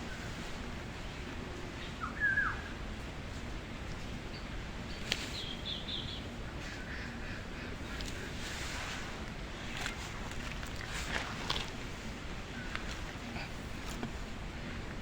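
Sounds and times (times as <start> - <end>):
steady background hiss: 0.0 - 15.0
birds calling: 1.7 - 2.8, 4.2 - 14.4.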